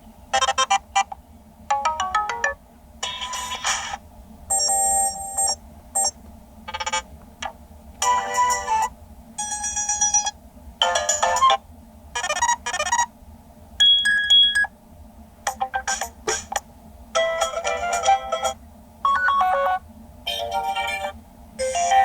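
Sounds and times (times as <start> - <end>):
phone ringtone melodies: 1.7 - 3.6, 17.2 - 22.0.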